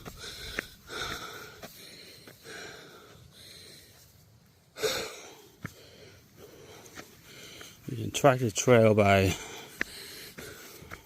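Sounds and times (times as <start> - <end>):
person breathing heavily: 0.0 - 7.9, 9.1 - 11.0
person speaking: 7.8 - 9.6.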